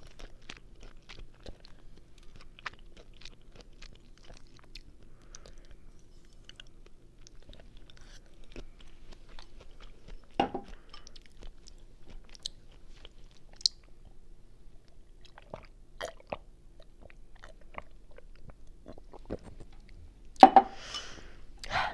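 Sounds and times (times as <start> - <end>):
close chewing with mouth clicks: 0.0 - 14.2, 14.8 - 20.4.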